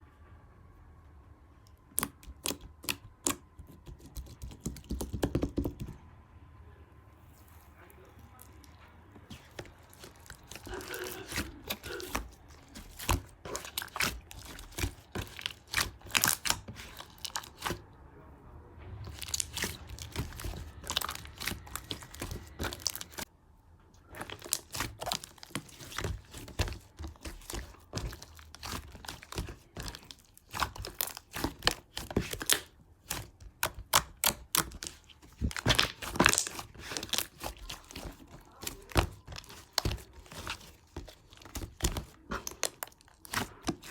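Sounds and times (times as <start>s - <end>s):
packaging crinkling and tearing: 9.2s - 17.8s, 19.0s - 23.3s, 24.0s - 43.9s.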